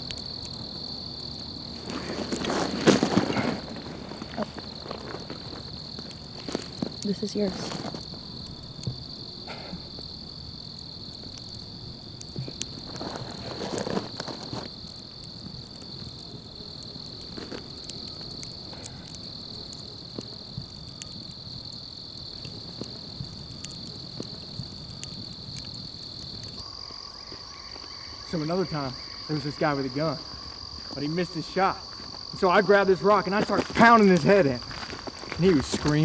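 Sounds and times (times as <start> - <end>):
insects chirring: 0.0 - 36.0
faint clicks: 1.3 - 26.6.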